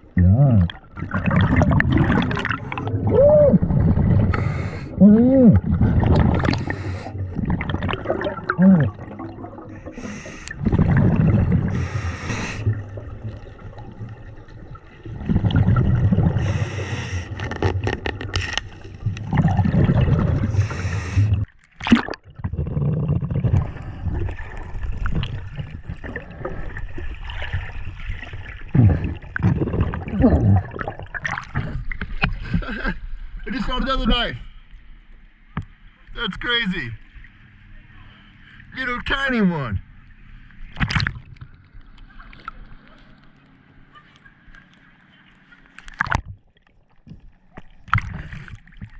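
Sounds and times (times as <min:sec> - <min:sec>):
gurgling exhaled bubbles: 0:00.0 - 0:32.8
hissing regulator inhalations: 0:04.3 - 0:05.0, 0:06.4 - 0:07.2, 0:09.9 - 0:10.6, 0:11.7 - 0:12.8, 0:16.4 - 0:17.8, 0:20.5 - 0:21.5.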